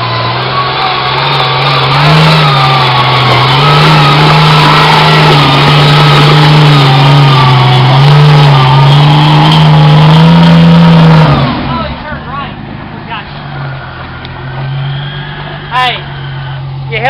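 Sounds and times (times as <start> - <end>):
car engine revving hard: 0.0 - 17.0.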